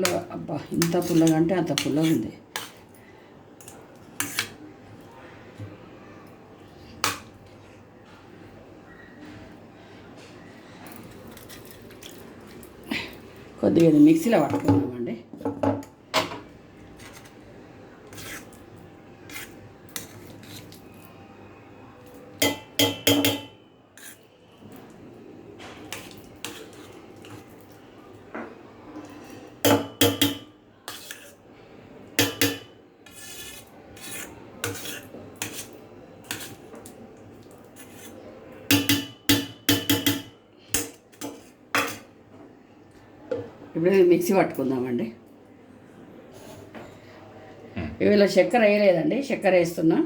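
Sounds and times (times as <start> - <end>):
metal spoon clinking on steel pots: 0.0 - 2.8, 13.7 - 17.3, 22.1 - 24.2, 29.2 - 31.4, 32.1 - 36.9, 37.8 - 42.1.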